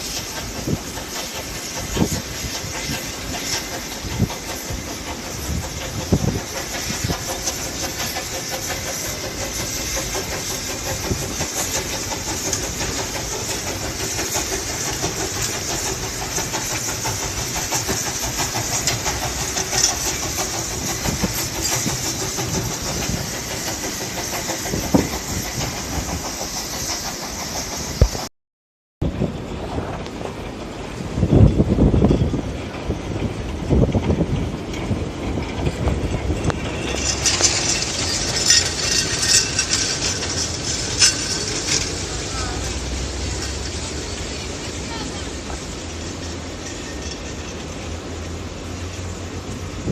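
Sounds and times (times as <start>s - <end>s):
wind buffeting microphone: 0.0s - 26.5s, 29.0s - 42.0s
steam train hiss and rumble: 0.0s - 28.3s, 29.0s - 49.9s.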